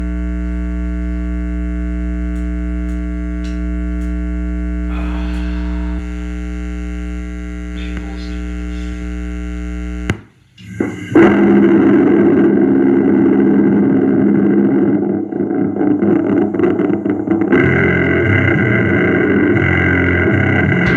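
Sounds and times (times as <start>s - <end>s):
amplifier mains hum: 0.0s - 20.9s
switch click: 2.3s - 4.2s.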